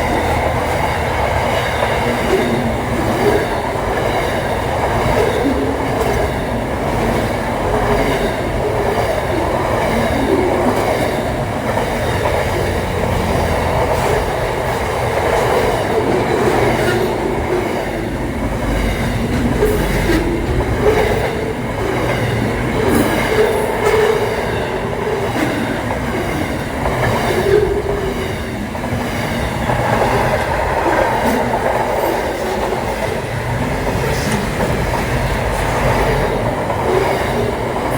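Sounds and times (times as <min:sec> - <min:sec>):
freight train wagons rumbling: 0:00.0 - 0:37.9
wheels clacking over rail joints: 0:00.0 - 0:37.9.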